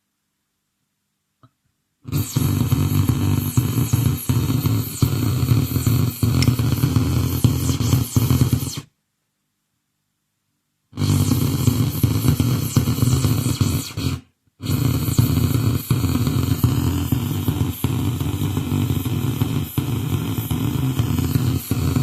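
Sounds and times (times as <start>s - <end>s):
harsh distorted buzzing: 11.0s - 22.0s.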